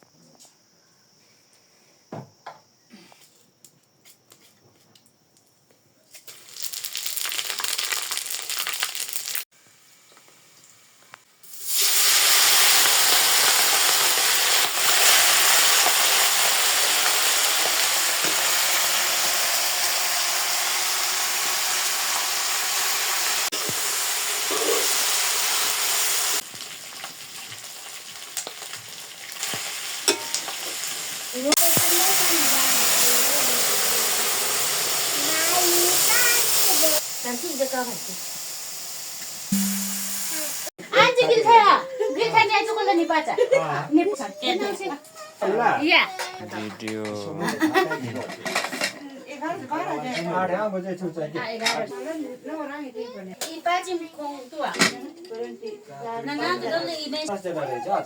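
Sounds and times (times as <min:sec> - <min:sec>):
chicken sizzling in hot oil: 0:06.2 - 0:40.7.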